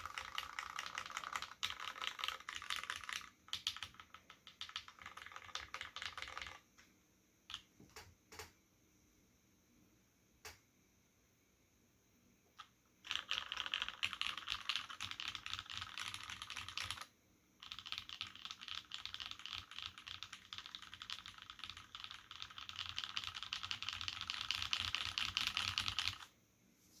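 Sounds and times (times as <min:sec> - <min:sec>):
fast mechanical keyboard typing: 0:00.0 - 0:06.6, 0:12.6 - 0:26.3.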